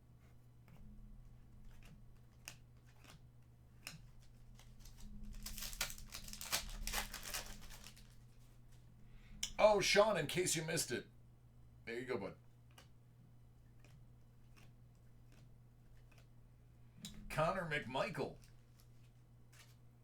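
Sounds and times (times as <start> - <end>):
cards clicking and flicking: 1.7 - 3.2, 3.8 - 8.2
wrapper crinkling and tearing: 3.8 - 8.4.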